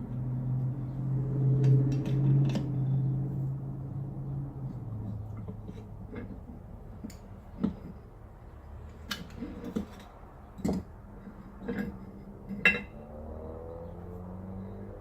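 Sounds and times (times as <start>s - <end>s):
metal parts clinking and knocking: 9.0s - 12.9s.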